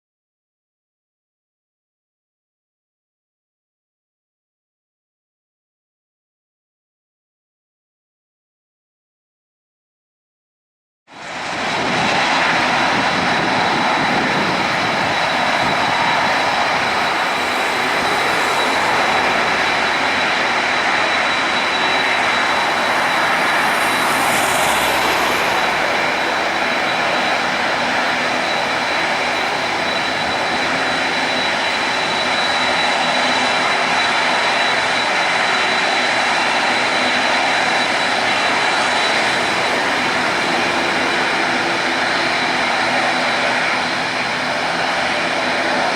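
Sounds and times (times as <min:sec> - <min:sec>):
jet engines running: 0:11.1 - 0:45.9
high whine: 0:11.5 - 0:45.9.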